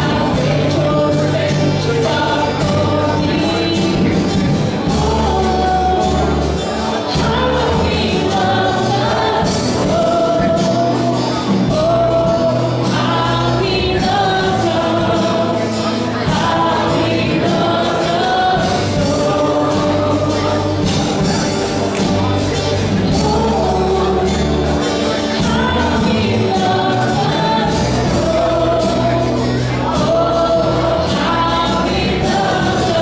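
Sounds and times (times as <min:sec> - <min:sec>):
choir-like singers: 0:00.0 - 0:33.0
live band playing: 0:00.0 - 0:33.0.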